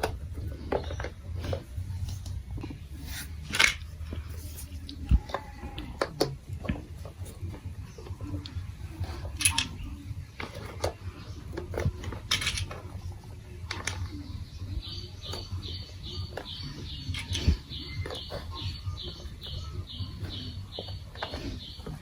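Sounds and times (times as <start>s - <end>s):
marbles clicking on plastic blocks: 9.2s - 9.8s, 11.6s - 13.0s, 16.3s - 18.5s.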